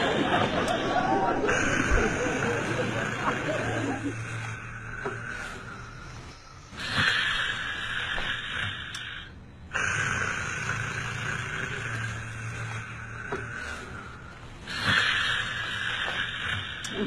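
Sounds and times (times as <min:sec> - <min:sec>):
person snoring: 0:00.0 - 0:17.0.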